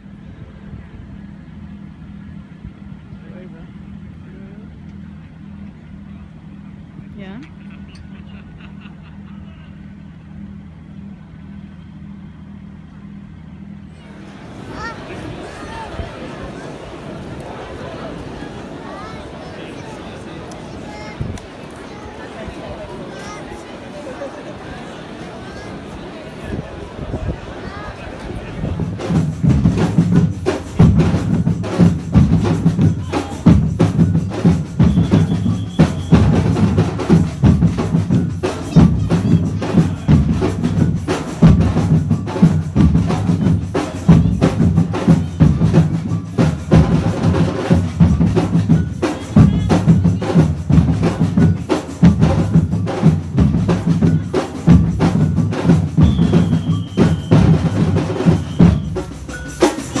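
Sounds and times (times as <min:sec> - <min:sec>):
drum band playing: 0:14.0 - 0:25.7, 0:27.5 - 1:00.0.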